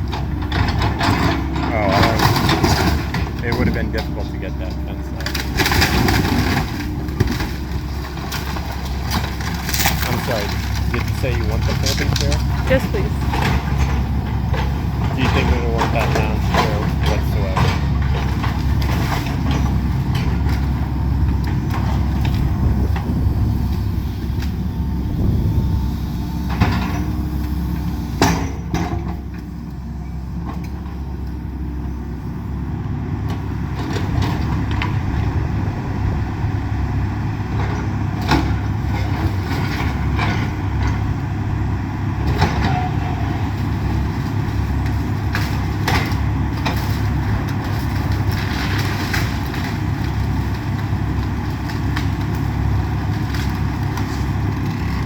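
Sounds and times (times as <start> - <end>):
excavator diesel engine running: 0.0 - 55.0
house breaking cracks and knocks: 5.2 - 13.9.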